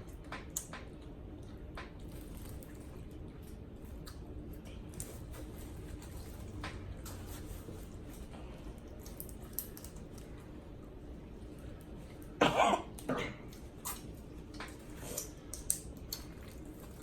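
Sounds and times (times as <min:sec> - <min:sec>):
eating clicks and smacks: 0:00.0 - 0:05.3, 0:08.7 - 0:11.0, 0:11.6 - 0:17.0
person coughing: 0:12.4 - 0:13.5.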